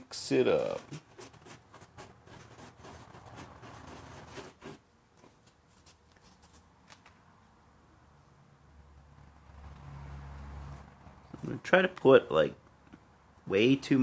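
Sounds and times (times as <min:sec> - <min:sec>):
stick scratching epoxy: 0:00.4 - 0:04.8.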